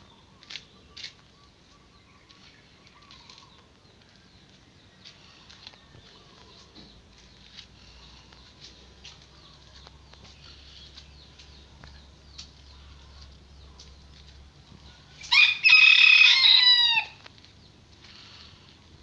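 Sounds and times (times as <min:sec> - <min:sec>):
rooster crowing: 0:15.2 - 0:17.2.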